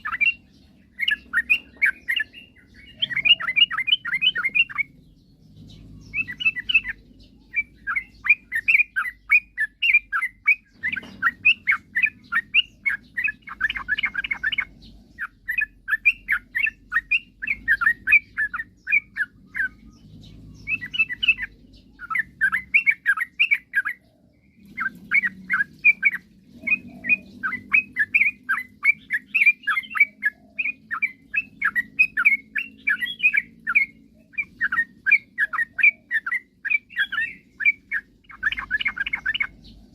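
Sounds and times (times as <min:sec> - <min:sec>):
bird singing chattering song: 0:00.0 - 0:39.9.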